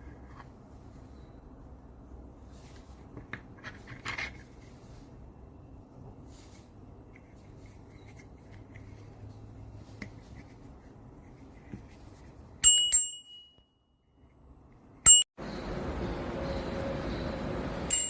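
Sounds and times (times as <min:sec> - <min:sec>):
short bell ding: 0:12.6 - 0:13.7
bicycle bell ringing: 0:12.6 - 0:13.8, 0:15.1 - 0:15.3.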